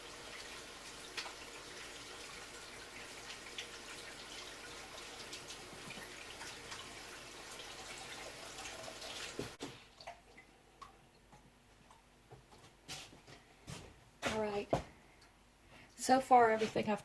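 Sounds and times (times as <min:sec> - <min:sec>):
water running from tap: 0:00.0 - 0:10.4
faint water drips: 0:00.0 - 0:12.1.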